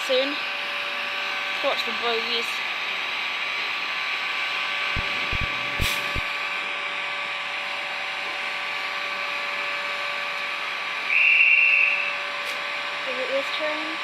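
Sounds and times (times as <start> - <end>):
train whirring drone: 0.0 - 14.0
low knocks: 5.0 - 6.3.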